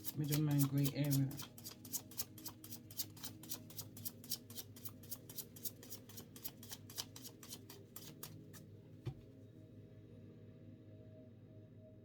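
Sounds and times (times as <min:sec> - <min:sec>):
cards being shuffled: 0:00.0 - 0:08.6.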